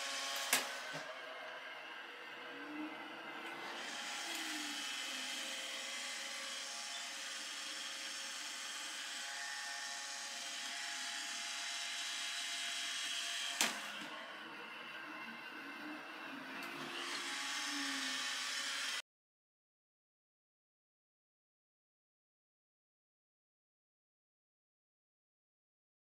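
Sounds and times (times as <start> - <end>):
robot vacuum whine: 0.0 - 19.0.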